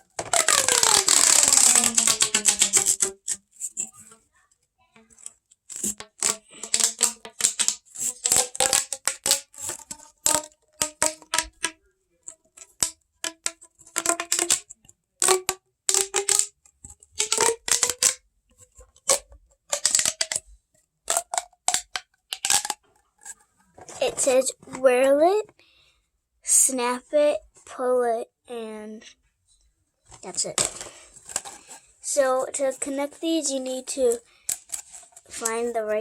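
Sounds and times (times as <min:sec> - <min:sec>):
plastic clicking and crackling: 0:00.0 - 0:24.8, 0:30.1 - 0:31.9, 0:34.1 - 0:35.6.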